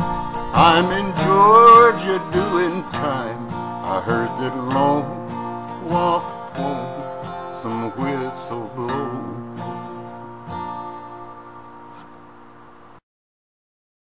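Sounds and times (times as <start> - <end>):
acoustic guitar strumming: 0.0 - 13.0
person singing: 0.3 - 9.6.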